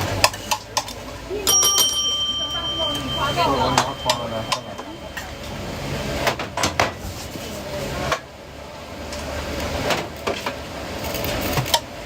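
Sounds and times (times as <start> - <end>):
utensils and containers clanking: 1.5 - 7.5.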